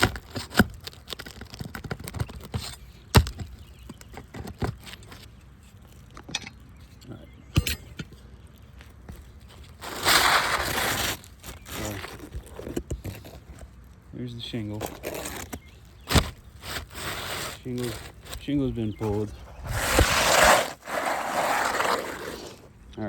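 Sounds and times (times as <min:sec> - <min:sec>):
shingle scraping free: 0:00.0 - 0:22.9
sharp tool strikes: 0:07.5 - 0:08.1.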